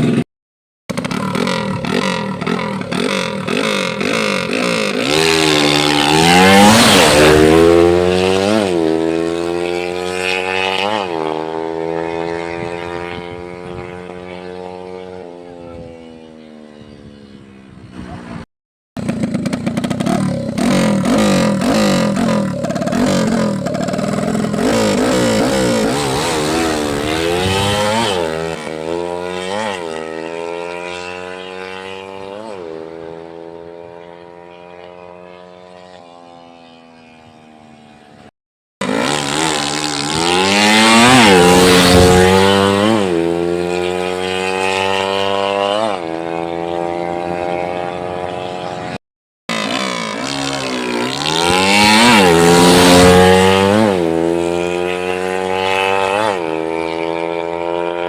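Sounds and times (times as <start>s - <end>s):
motorcycle engine revving: 0.0s - 0.3s, 0.9s - 58.0s.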